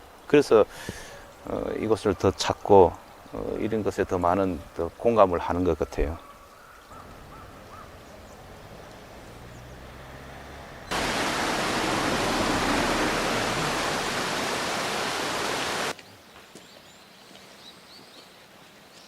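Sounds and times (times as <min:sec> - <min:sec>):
loud rushing noise: 0:10.9 - 0:15.9.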